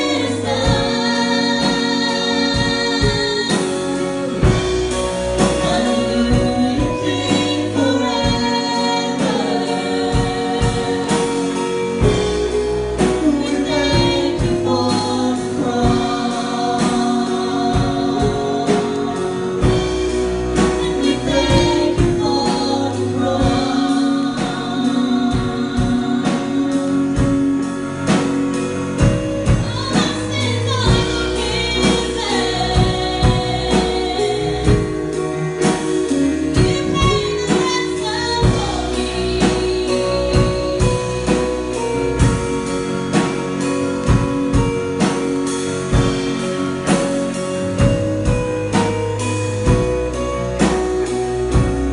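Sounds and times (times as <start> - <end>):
voices singing together: 0.0 - 27.3, 29.8 - 41.6
band with bass and drums: 0.0 - 51.9.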